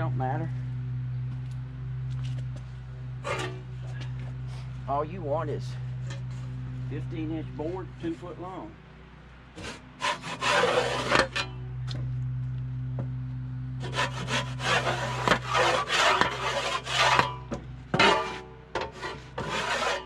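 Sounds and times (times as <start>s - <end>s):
low hum: 0.0s - 19.8s
saw rasping through wood: 9.6s - 11.5s, 13.8s - 20.0s.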